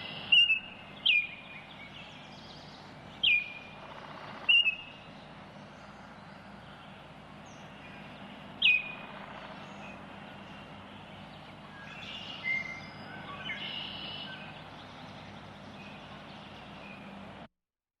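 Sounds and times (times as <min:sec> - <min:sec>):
oriole calling: 0:00.0 - 0:17.2
steady background hiss: 0:00.0 - 0:17.5.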